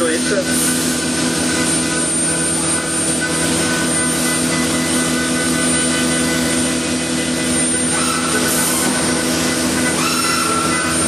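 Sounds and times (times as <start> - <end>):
higher machine tone: 0.0 - 11.0
woodworking machine whine: 0.0 - 11.0.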